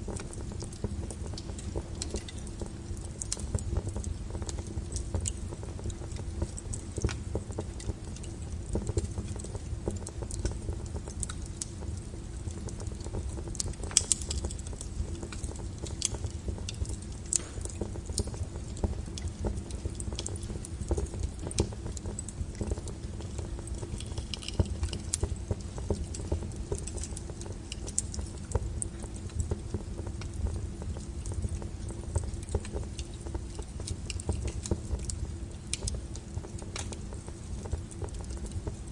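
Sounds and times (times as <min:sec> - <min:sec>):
wood fire crackling and popping: 0:00.0 - 0:38.9.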